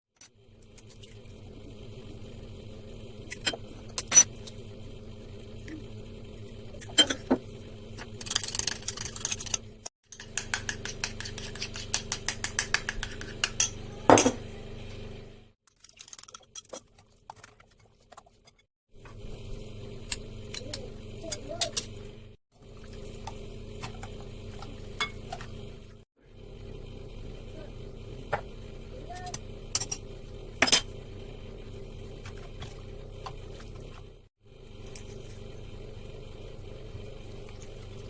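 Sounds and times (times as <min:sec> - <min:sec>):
steady low hum: 0:00.3 - 0:08.6, 0:19.0 - 0:38.0
utensils clinking against dishes: 0:08.4 - 0:14.4
spoon beating in a cup: 0:10.2 - 0:14.4.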